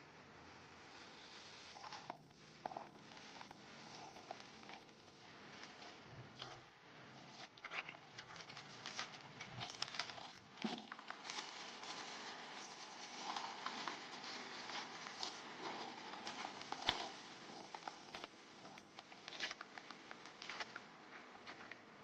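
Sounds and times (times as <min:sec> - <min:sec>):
rustling and crinkling: 0:01.0 - 0:22.0
small clicks and cracks: 0:07.3 - 0:22.0.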